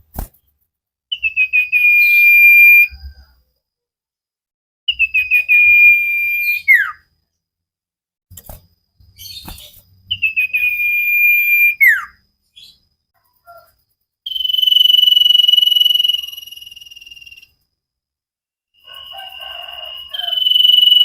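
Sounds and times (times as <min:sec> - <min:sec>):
bird singing whistled phrases: 0:01.1 - 0:03.2, 0:04.9 - 0:07.1, 0:09.2 - 0:12.8, 0:14.3 - 0:17.6, 0:19.5 - 0:21.0.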